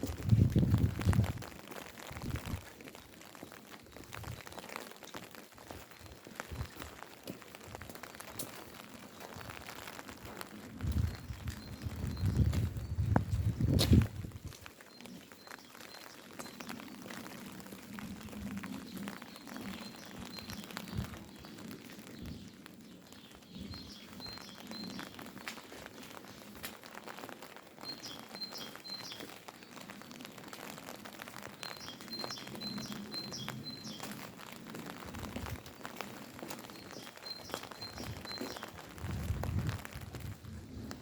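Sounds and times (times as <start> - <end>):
rain patter: 0.0 - 41.0
dripping water ticks: 0.1 - 41.0
songbird chirping: 18.6 - 26.6, 27.8 - 30.1, 31.5 - 34.3, 35.4 - 39.3.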